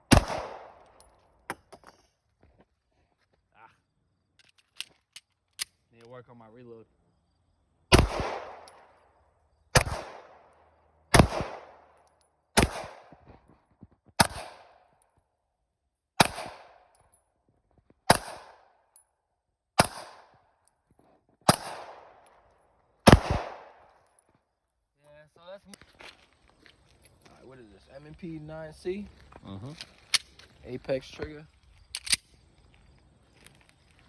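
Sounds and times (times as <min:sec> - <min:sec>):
pistol shots with echo: 0:00.1 - 0:01.0, 0:07.9 - 0:09.0, 0:09.7 - 0:10.5, 0:11.1 - 0:12.0, 0:12.6 - 0:13.1, 0:14.2 - 0:14.8, 0:16.2 - 0:16.9, 0:18.1 - 0:18.7, 0:19.8 - 0:20.3, 0:21.5 - 0:22.2, 0:23.0 - 0:23.9.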